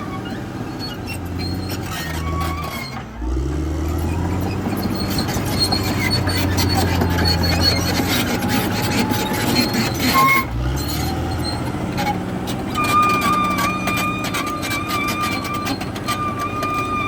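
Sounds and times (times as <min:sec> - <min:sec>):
high squeal from undercarriage: 0:00.0 - 0:03.1, 0:04.0 - 0:17.0
diesel engine running: 0:00.0 - 0:17.0
steel tracks clanking: 0:04.7 - 0:17.0.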